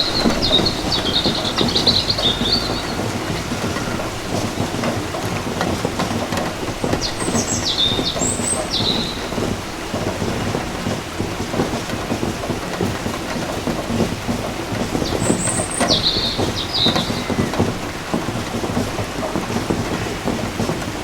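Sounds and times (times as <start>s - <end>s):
heavy rain pattering: 0.0s - 21.0s.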